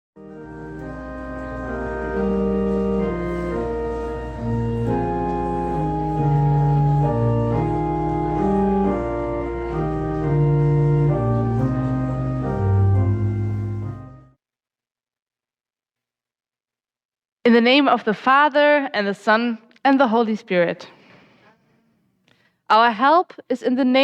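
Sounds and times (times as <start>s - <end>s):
church organ chords: 0.2s - 14.3s
low organ bass note: 0.2s - 14.3s.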